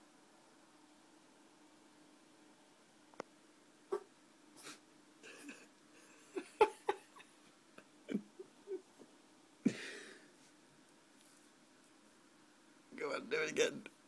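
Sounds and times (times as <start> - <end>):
rabbit hiccuping: 3.9 - 4.1.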